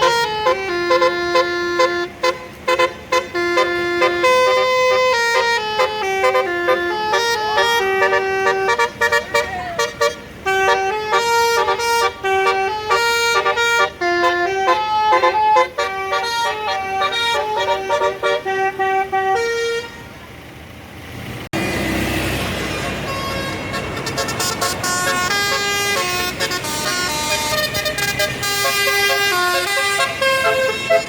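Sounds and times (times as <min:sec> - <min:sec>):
musical bus horn melody: 0:00.0 - 0:20.2, 0:22.5 - 0:31.0.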